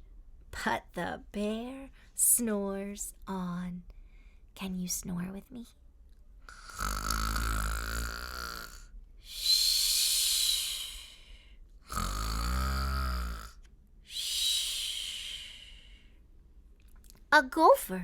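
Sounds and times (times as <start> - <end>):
woman imitating snoring: 6.5 - 11.2, 11.9 - 15.6.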